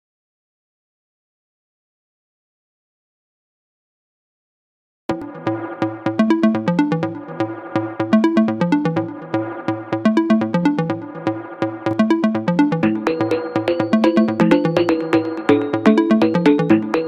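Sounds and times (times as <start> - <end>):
steady electronic beat: 5.1 - 17.0
synthesizer riff: 5.1 - 17.0.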